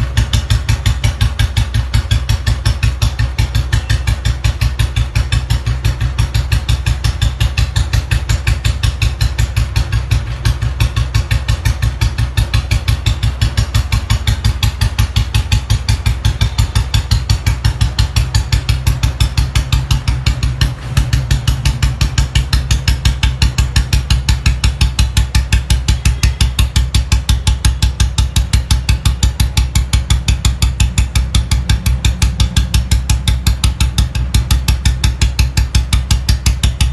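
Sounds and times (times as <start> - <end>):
motorcycle engine idling: 0.0 - 36.9.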